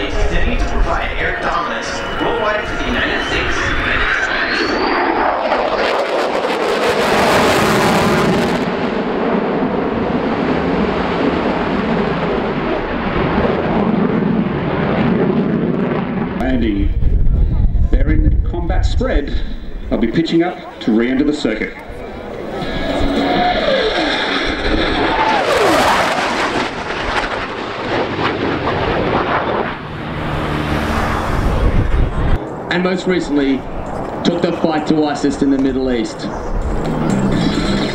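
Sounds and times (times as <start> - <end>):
fighter jet engine roar: 0.0 - 37.9.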